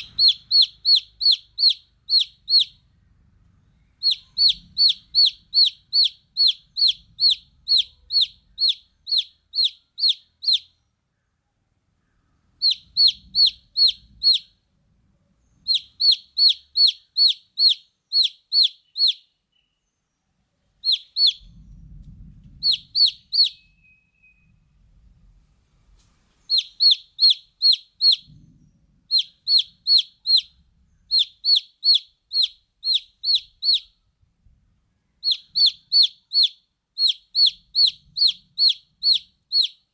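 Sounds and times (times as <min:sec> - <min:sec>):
baby chicks peeping: 0:00.0 - 0:02.9, 0:03.9 - 0:10.8, 0:12.6 - 0:14.6, 0:15.6 - 0:19.4, 0:20.8 - 0:21.6, 0:22.5 - 0:23.8, 0:26.5 - 0:28.4, 0:29.1 - 0:34.0, 0:35.2 - 0:39.9.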